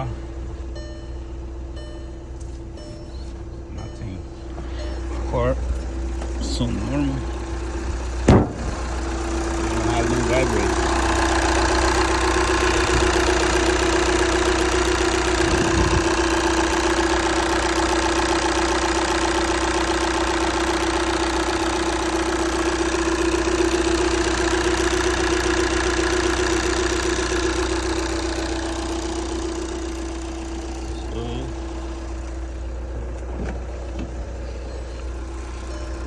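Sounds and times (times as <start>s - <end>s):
diesel engine idling: 0.0s - 36.0s
low thump: 8.2s - 8.9s.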